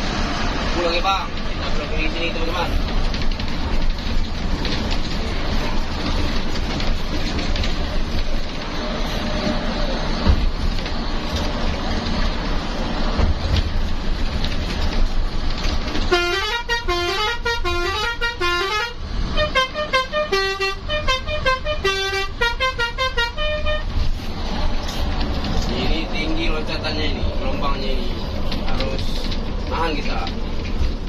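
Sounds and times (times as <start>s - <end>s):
bus engine and road rumble: 0.0s - 31.0s
musical bus horn: 16.0s - 24.0s.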